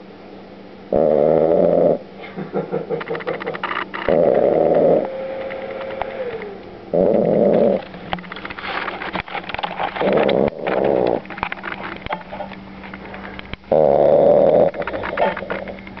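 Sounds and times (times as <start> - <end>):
puppy snoring: 0.9 - 2.0, 4.0 - 7.9, 9.9 - 11.3, 13.7 - 15.8.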